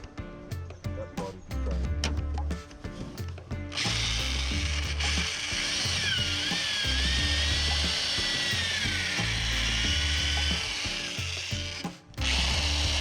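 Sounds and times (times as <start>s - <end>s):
background music with bass line: 0.0s - 13.0s
power drill driving screws: 3.8s - 13.0s.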